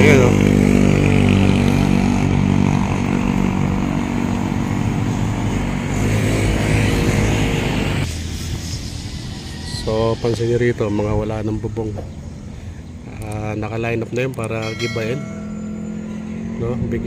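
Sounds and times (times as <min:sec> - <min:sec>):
traffic noise: 0:00.0 - 0:17.0
vehicle engine running: 0:14.6 - 0:17.0.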